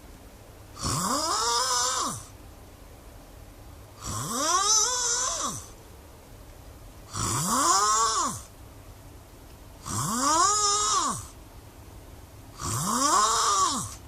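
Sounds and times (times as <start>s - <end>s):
person snoring loudly: 0.8s - 2.3s, 4.0s - 5.7s, 7.1s - 8.5s, 9.8s - 11.4s, 12.6s - 14.0s.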